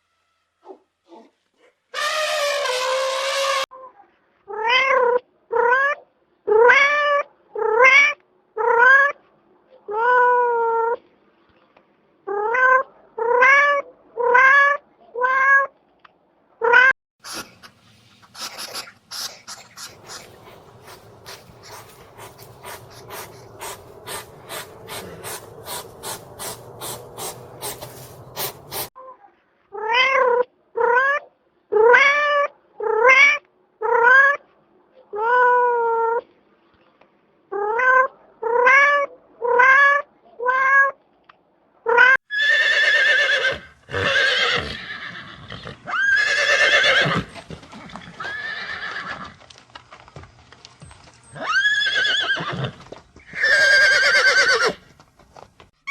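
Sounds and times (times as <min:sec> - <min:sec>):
horse neighing: 0:42.3 - 0:49.4, 0:51.4 - 0:54.8.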